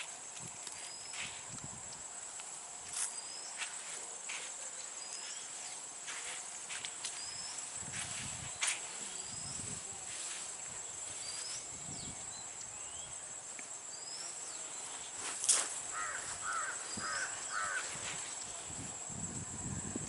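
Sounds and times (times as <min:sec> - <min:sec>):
small birds chirping: 0:00.0 - 0:02.0, 0:03.0 - 0:13.3, 0:13.9 - 0:18.9
high-pitched insect whine: 0:00.0 - 0:20.0
bird harsh calls: 0:15.9 - 0:18.0.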